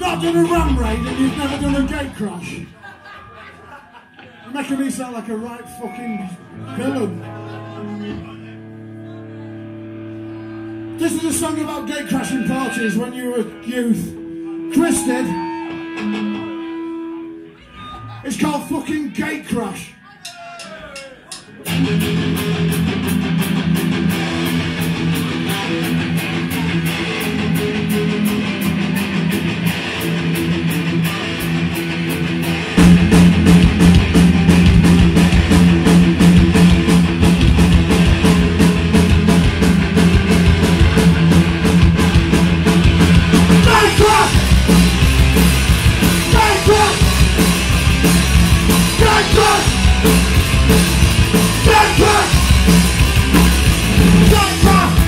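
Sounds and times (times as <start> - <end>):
drums and bass: 0.0 - 2.6, 21.6 - 55.0
electric guitar: 6.5 - 17.6, 21.6 - 55.0
shouted singing: 43.6 - 44.4, 46.2 - 47.1, 48.8 - 50.1, 51.4 - 52.6.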